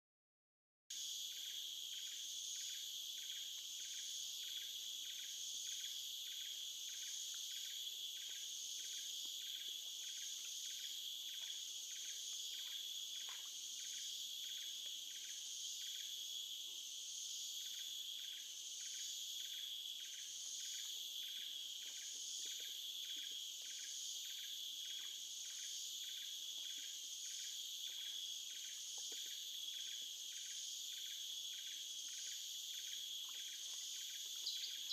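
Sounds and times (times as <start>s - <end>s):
insects trilling: 0.9s - 34.9s
pulsing insect call: 1.0s - 34.9s.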